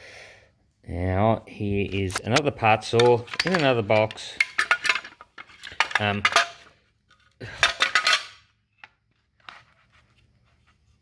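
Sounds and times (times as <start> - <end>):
metal parts clattering in a box: 3.0 - 6.7, 7.4 - 8.4.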